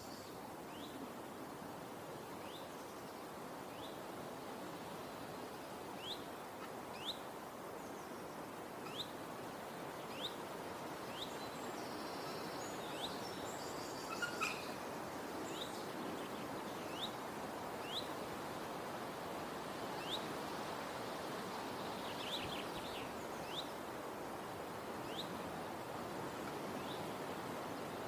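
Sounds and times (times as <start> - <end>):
outdoor background hiss: 0.0 - 28.0
higher bird calls: 14.0 - 14.8.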